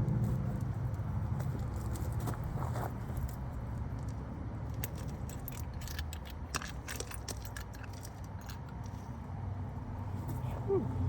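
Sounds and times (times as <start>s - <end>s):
lug nuts clinking: 3.8s - 9.1s.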